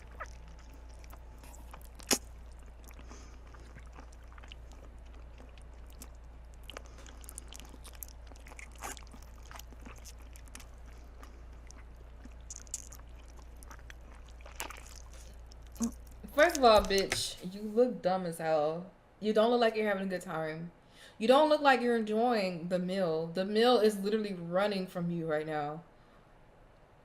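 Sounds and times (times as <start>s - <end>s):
wet chewing mouth sounds: 0.0s - 17.2s
steady low hum: 0.0s - 21.5s.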